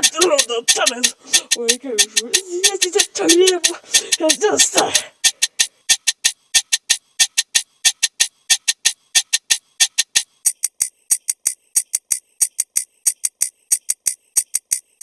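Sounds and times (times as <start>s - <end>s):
rapid sharp clicks: 0.0s - 15.0s.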